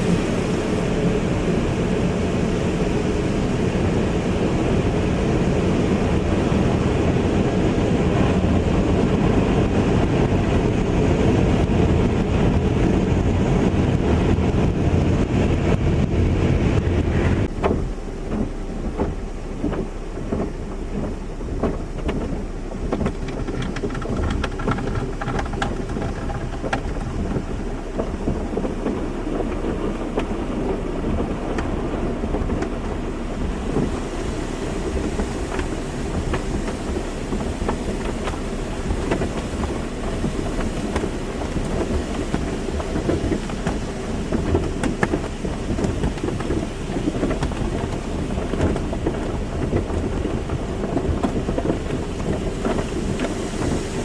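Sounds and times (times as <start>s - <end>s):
low rumble of machinery: 0.0s - 54.0s
water spray drumming on car body: 0.0s - 54.0s
hiss of spray: 33.2s - 44.3s.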